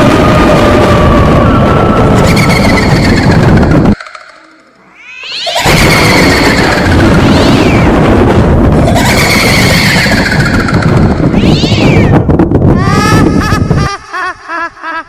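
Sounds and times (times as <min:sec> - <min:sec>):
eerie cat-like yowling cries: 0:00.0 - 0:08.0, 0:08.8 - 0:12.2
dense noise with falling high tone: 0:00.0 - 0:12.3.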